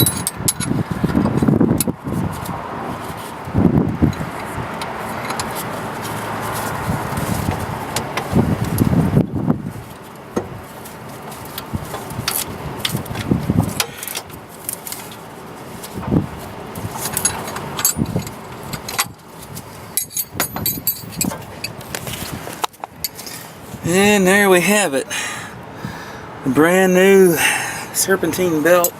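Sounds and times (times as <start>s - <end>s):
light metallic clinks and rattles: 0.0s - 1.9s, 16.9s - 23.5s
outdoor background hiss: 0.0s - 28.9s.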